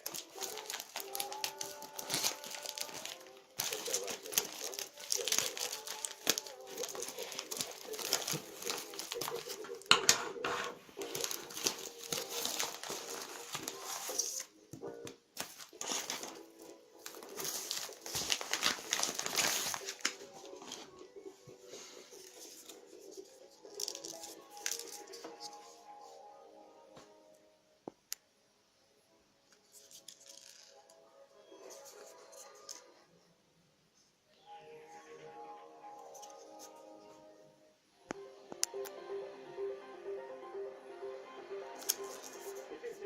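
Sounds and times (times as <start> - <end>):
plastic packaging crinkling: 0.0 - 9.9, 11.0 - 14.5, 15.4 - 20.9, 23.6 - 25.4.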